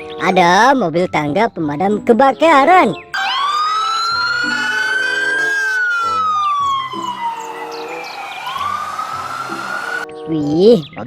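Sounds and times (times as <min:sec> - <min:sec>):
faint background music: 0:00.0 - 0:11.0
wailing siren: 0:03.2 - 0:10.0.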